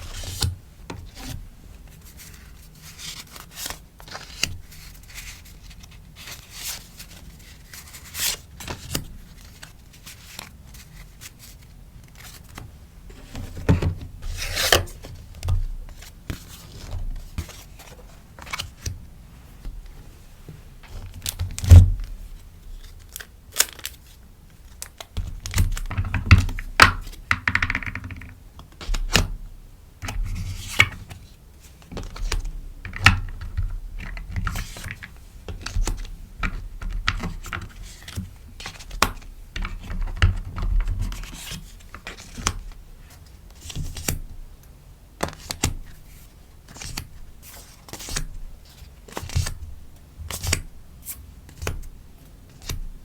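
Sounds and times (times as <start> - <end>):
taps and knocks on a desk: 27.3 - 28.4.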